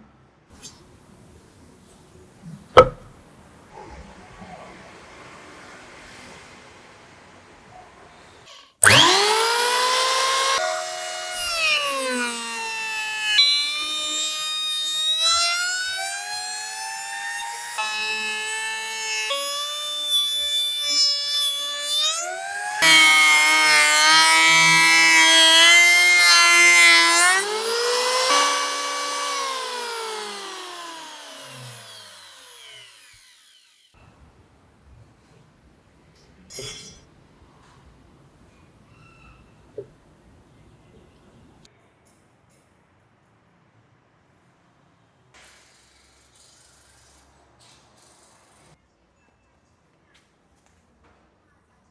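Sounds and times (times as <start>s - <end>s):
electric planer motor whine: 0.8s - 3.3s, 8.8s - 34.7s.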